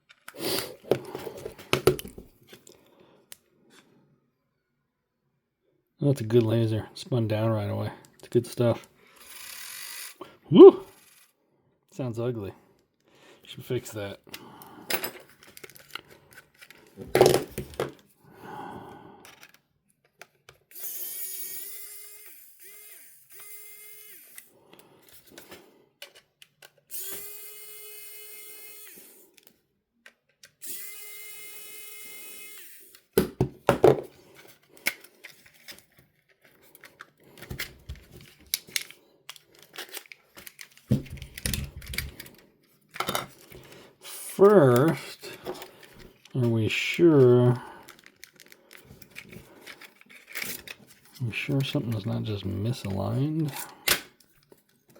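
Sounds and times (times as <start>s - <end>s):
clicks of handling small parts: 0.0s - 3.8s, 14.3s - 18.1s, 19.2s - 30.9s, 31.5s - 43.8s, 44.4s - 52.1s, 52.7s - 54.9s
small electric motor whining: 9.2s - 10.2s, 20.7s - 24.6s, 26.9s - 29.4s, 30.6s - 33.1s.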